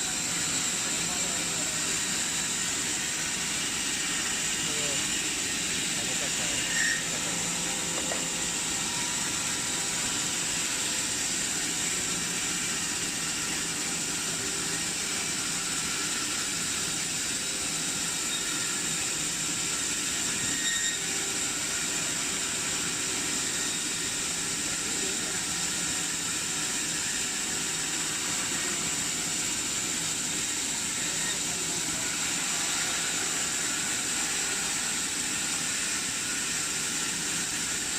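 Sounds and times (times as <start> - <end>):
band saw hiss and whine: 0.0 - 37.9.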